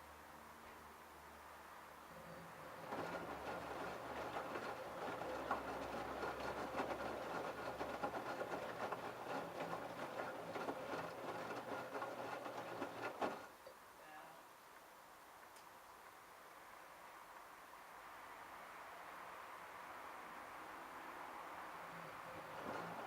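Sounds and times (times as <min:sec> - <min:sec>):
washing machine drum clattering: 0:02.8 - 0:13.5.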